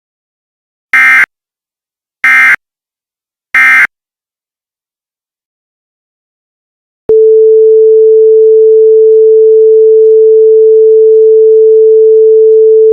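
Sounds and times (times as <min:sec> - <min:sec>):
electronic sine tone: 0:01.0 - 0:01.3, 0:03.6 - 0:03.9.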